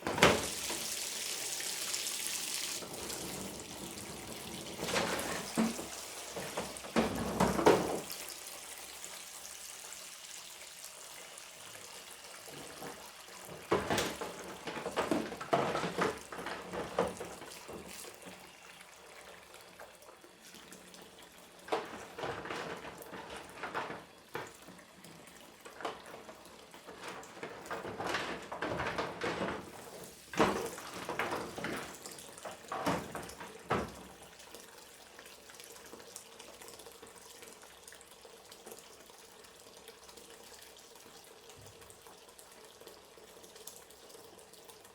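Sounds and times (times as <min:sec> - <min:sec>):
tap running: 0:00.0 - 0:08.4
dishes and utensils clattering: 0:03.0 - 0:08.1, 0:12.6 - 0:17.7, 0:27.0 - 0:32.0.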